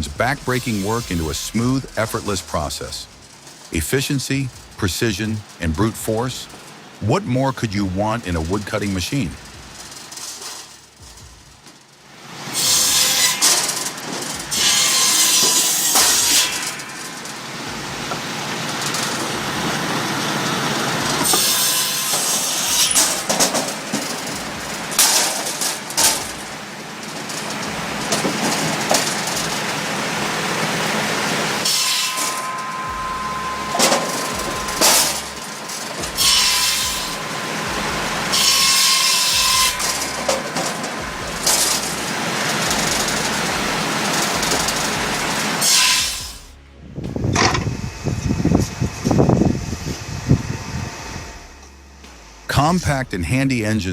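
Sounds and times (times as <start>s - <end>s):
faint saw whine: 0.0s - 3.4s, 31.2s - 52.5s
saw cutting logs: 0.0s - 4.5s, 12.4s - 26.5s, 27.6s - 46.6s.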